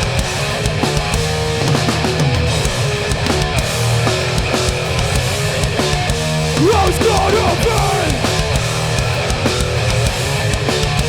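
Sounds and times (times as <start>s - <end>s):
bass guitar: 0.0s - 11.0s
distorted electric guitars: 0.0s - 11.0s
drum hits: 6.6s - 8.8s.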